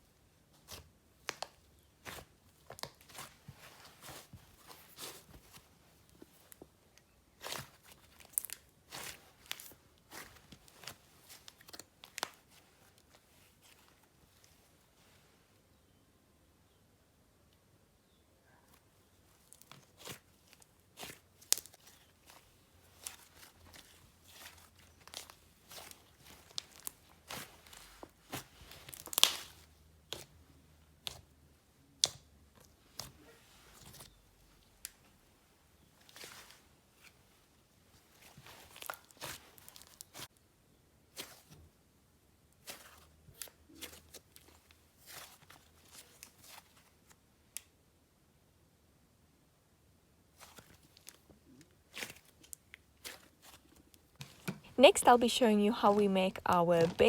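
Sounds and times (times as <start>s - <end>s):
crunchy slime squishes: 0.2s - 14.7s, 18.7s - 40.4s, 41.0s - 41.7s, 42.4s - 47.7s, 50.2s - 57.0s
slime popping and crackling: 28.3s - 30.3s.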